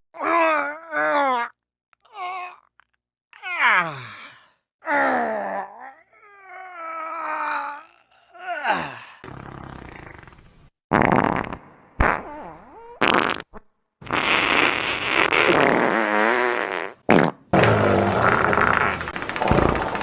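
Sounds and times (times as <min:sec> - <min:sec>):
fart sounds: 0:09.2 - 0:20.0.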